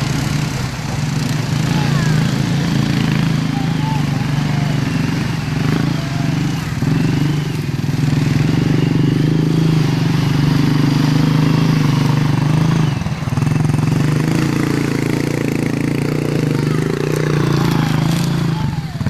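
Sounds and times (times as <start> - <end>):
atv engine running: 0.0 - 19.0.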